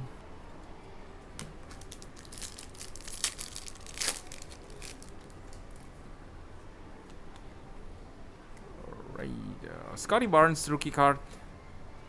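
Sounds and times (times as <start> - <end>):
trading cards rustling and clicking: 1.4 - 5.9.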